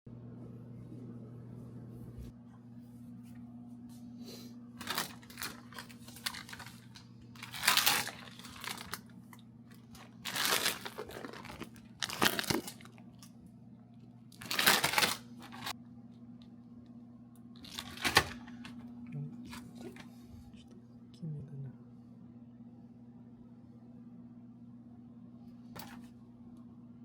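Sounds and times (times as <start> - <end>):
steady low hum: 0.1 - 27.0
rustling and crinkling: 4.8 - 13.4, 14.3 - 15.8, 17.6 - 18.8.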